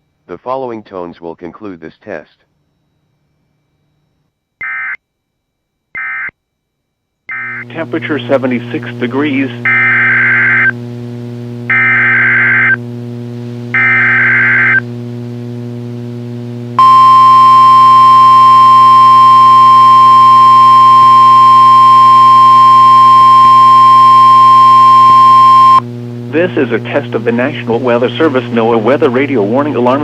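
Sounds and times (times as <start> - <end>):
low receiver hum: 7.3 - 30.0
buzzing digital data bursts: 9.2 - 10.8, 11.7 - 12.8, 13.7 - 14.8, 16.8 - 25.8
steady warning alarm tone: 9.6 - 10.7, 11.7 - 12.8, 13.7 - 14.8, 16.8 - 25.8.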